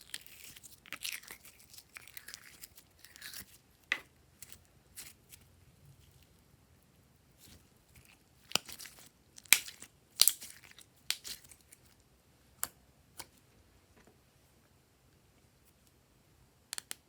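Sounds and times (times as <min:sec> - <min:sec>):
slime popping and crackling: 0:07.4 - 0:11.7.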